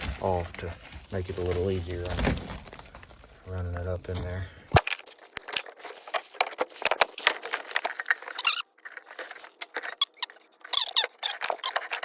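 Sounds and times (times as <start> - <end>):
cable scraping and rustling: 0.0 - 12.0
short squeaks: 8.2 - 12.0.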